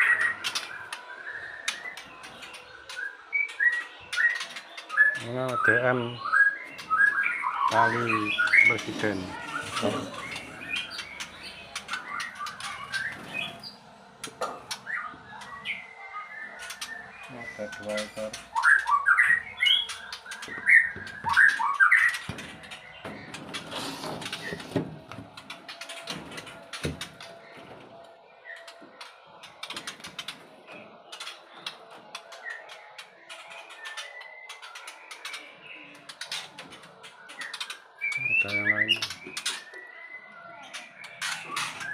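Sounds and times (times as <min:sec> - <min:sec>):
birds chirping: 0:00.0 - 0:41.9.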